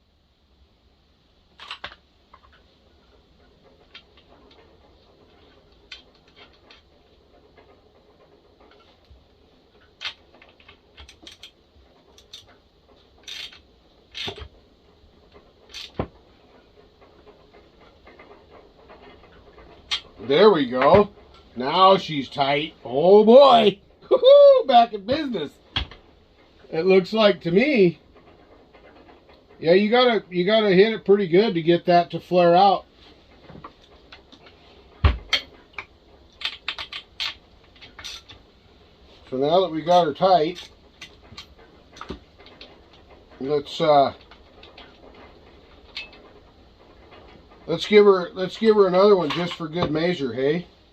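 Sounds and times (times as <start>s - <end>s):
metal parts clicking and tapping: 1.5s - 2.7s, 3.5s - 14.6s, 15.3s - 16.2s, 33.5s - 38.4s, 39.2s - 46.4s, 47.0s - 50.2s
tool handling: 15.7s - 16.2s, 33.5s - 38.4s, 47.8s - 50.2s.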